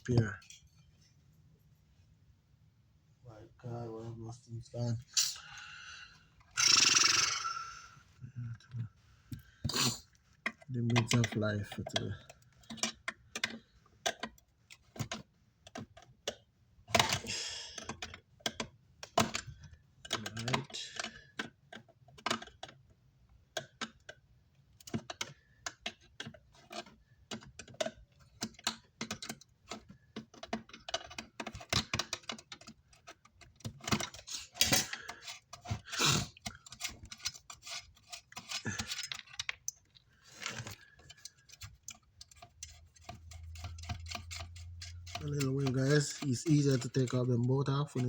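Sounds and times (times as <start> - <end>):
hand tools clicking and tapping: 10.4 - 22.9, 23.5 - 24.2, 24.8 - 48.0.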